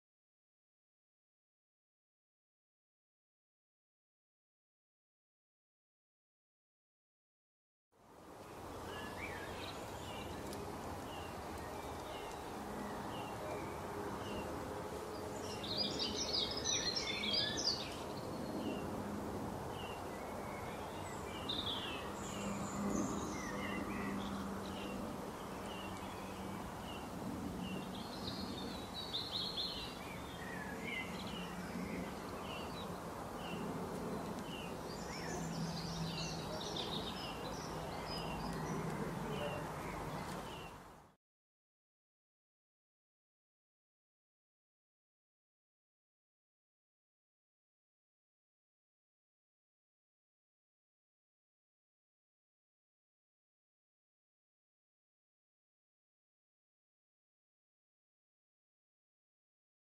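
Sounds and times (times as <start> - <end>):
birds chirping: 8.4 - 19.0, 19.7 - 41.2.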